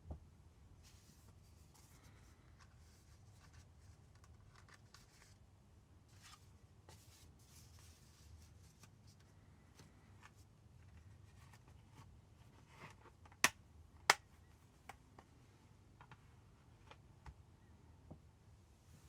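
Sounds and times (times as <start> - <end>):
paper rustling and handling: 0.8 - 5.4.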